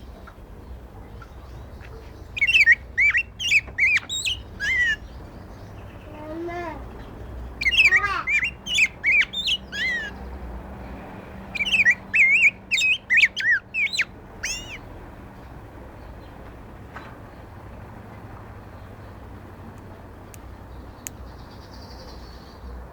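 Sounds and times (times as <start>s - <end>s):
bird singing whistled notes: 2.4s - 5.1s, 7.6s - 10.2s, 11.5s - 14.8s.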